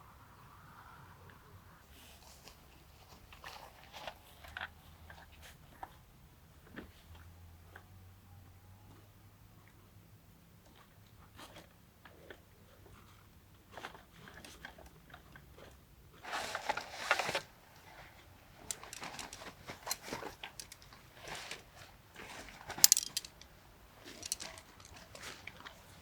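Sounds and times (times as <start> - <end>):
crunching and rustling: 13.7 - 26.0
clicks: 22.8 - 23.5, 24.2 - 25.6.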